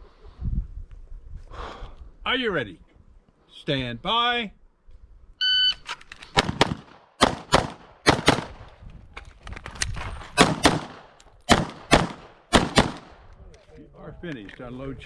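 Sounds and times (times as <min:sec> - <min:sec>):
pistol shots: 0:06.4 - 0:08.7, 0:10.4 - 0:13.2.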